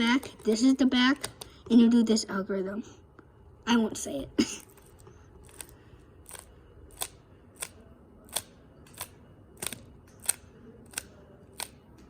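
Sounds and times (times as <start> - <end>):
puzzle cube plastic clicks: 4.7 - 11.8.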